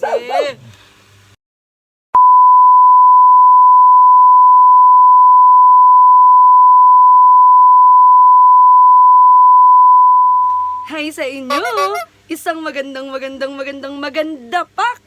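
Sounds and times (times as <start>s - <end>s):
long electronic beep: 2.2s - 10.9s.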